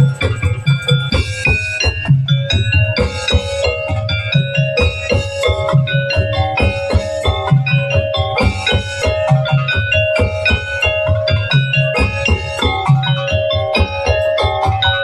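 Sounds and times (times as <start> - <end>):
percussion and drums beating: 0.0 - 15.0
pitched melodic notes: 0.0 - 15.0.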